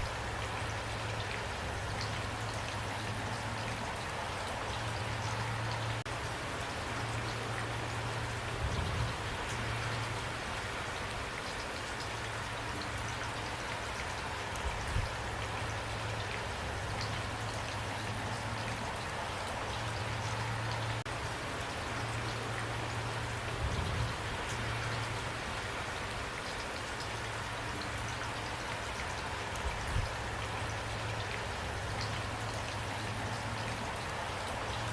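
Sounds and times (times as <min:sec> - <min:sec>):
steady rain: 0:00.0 - 0:34.9.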